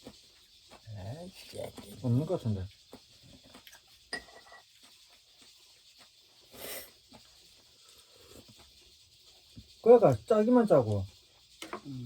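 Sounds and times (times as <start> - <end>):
spoon clinking on dish: 4.1 - 4.6.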